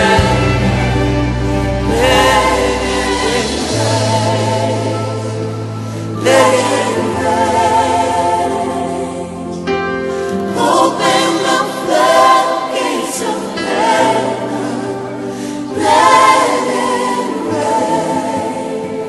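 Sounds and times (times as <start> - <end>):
choir singing: 0.0 - 19.0.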